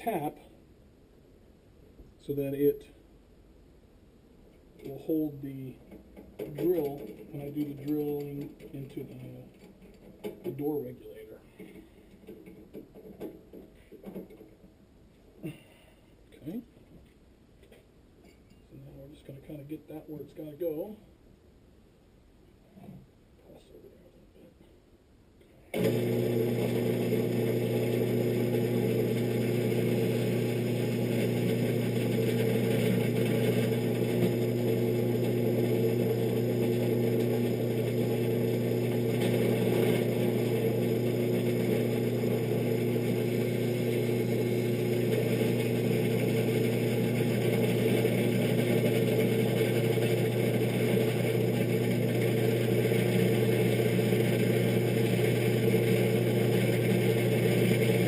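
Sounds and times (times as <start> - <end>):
electric drill drilling metal: 25.8 - 58.0.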